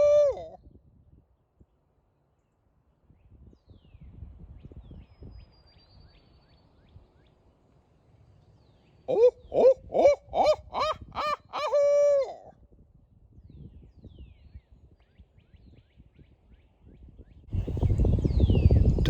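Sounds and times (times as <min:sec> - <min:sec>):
person imitating owl hoots: 0:00.0 - 0:00.6, 0:09.1 - 0:12.5
low wind rumble: 0:00.0 - 0:02.2, 0:03.0 - 0:07.3, 0:08.6 - 0:19.0
faint bird chirps: 0:03.2 - 0:07.4.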